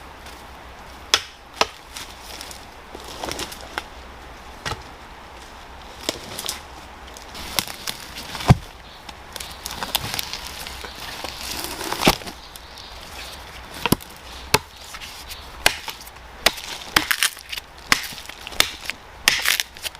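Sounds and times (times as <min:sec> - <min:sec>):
hand tool chopping wood: 0:15.6 - 0:19.9.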